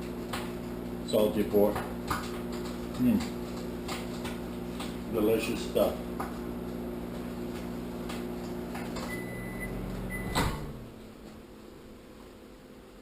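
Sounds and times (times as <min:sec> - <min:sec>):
microwave oven humming: 0:00.0 - 0:13.0
short high beep: 0:09.1 - 0:10.4.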